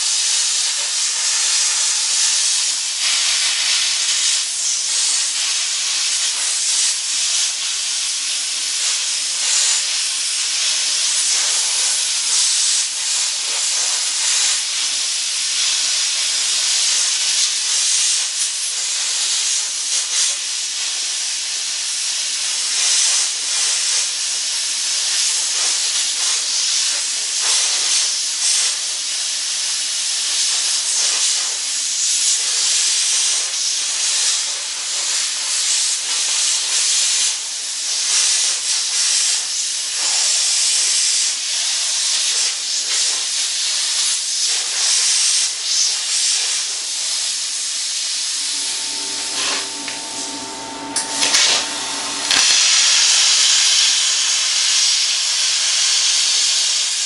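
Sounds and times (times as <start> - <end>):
plasma cutter hissing: 0.0 - 57.0
low tonal hum: 48.3 - 53.8.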